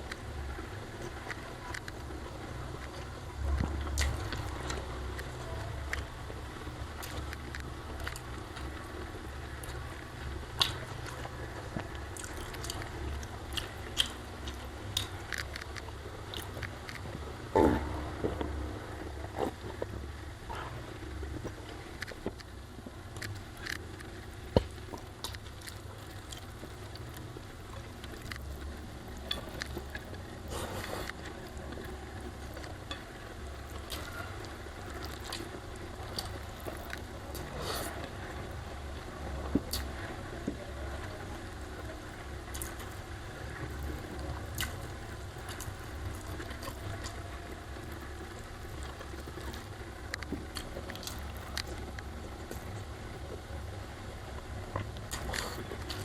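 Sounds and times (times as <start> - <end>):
steady low hum: 0.0 - 56.0
person chewing with mouth smacks: 10.6 - 18.5, 33.6 - 38.1, 39.4 - 40.6, 43.6 - 47.2, 47.8 - 52.9, 54.8 - 56.0.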